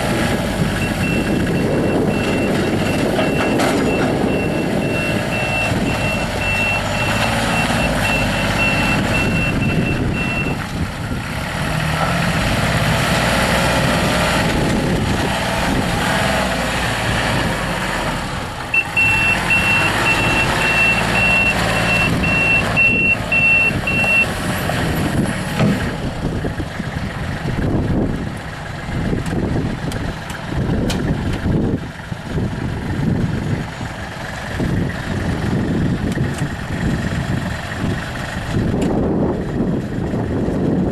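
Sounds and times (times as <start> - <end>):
diesel engine running: 0.0 - 40.9
backup alarm beeping: 0.8 - 10.6, 18.8 - 24.3.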